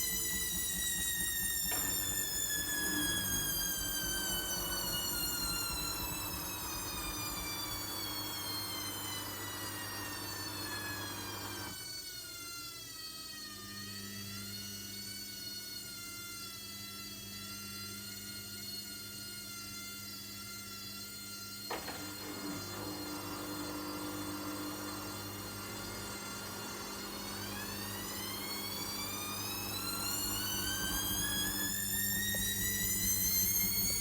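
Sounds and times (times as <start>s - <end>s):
washing machine motor whining: 0.0s - 12.6s, 21.5s - 34.0s.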